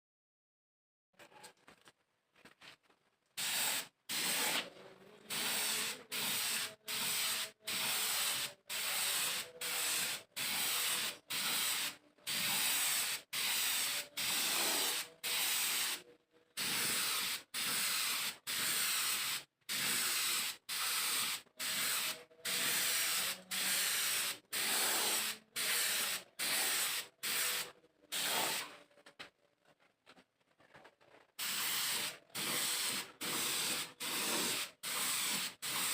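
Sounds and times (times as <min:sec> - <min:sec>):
spray gun hissing bursts: 0:03.4 - 0:04.6, 0:05.3 - 0:16.0, 0:16.6 - 0:28.7, 0:31.4 - 0:35.9.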